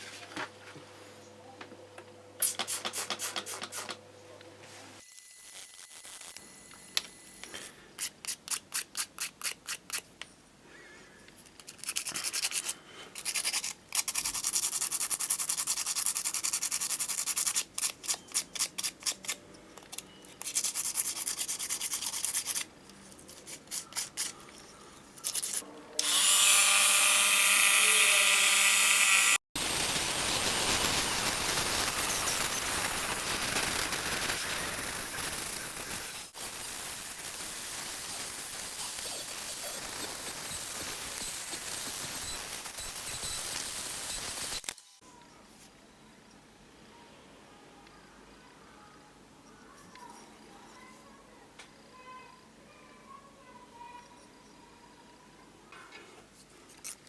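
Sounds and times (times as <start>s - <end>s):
steady hiss: 29.6s - 44.6s.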